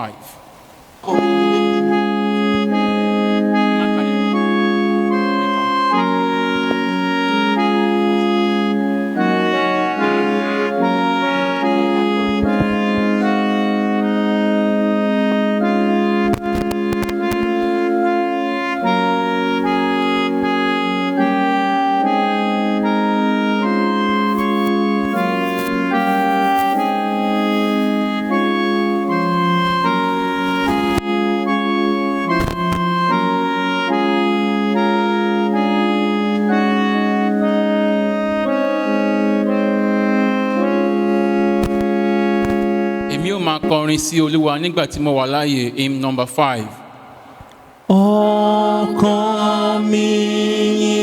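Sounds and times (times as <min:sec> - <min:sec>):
organ playing hymn chords: 0:00.0 - 0:47.1, 0:47.9 - 0:51.0.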